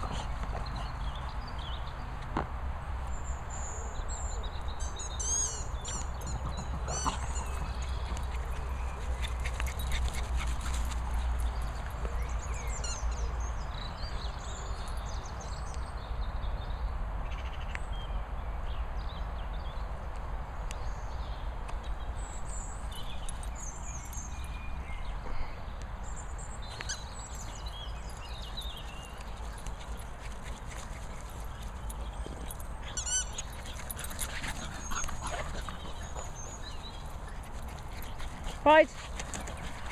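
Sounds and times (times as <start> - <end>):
dogs squeaking and chirping: 4.8 - 13.2, 26.7 - 27.7, 28.4 - 39.9.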